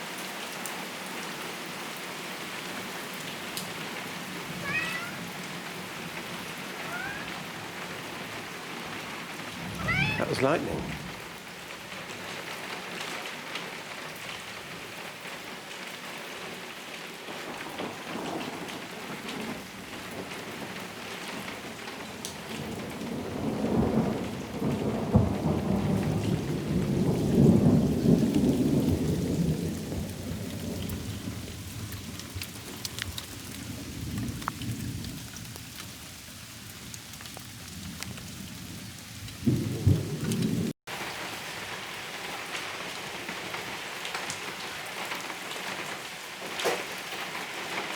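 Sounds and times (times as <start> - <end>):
steady rain: 0.0 - 47.9
rolling thunder: 8.9 - 11.5, 22.6 - 32.2, 39.4 - 40.7.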